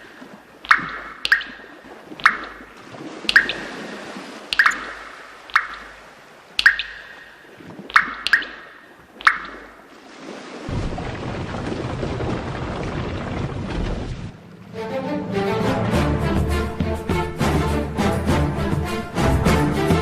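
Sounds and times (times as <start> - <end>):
sharp dripping plinks: 0.0 - 9.9.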